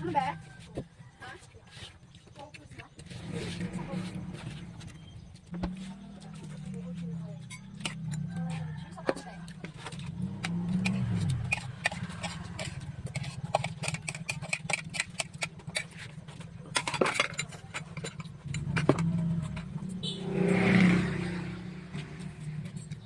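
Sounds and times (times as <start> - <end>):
motor vehicle engine hum: 2.9 - 23.0
cutlery and dishes clinking: 7.4 - 19.9.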